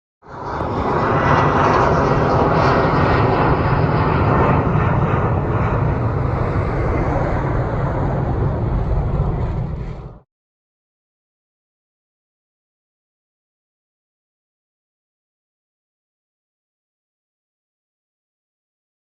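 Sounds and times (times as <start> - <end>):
jet engines roaring: 0.2 - 10.2.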